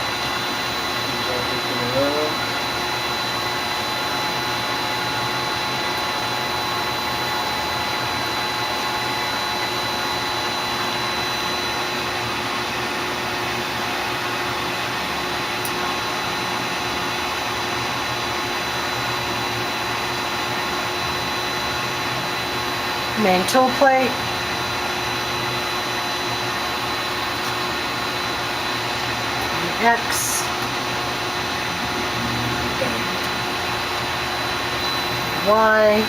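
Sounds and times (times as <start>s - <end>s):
lathe spindles whirring: 0.0s - 36.0s.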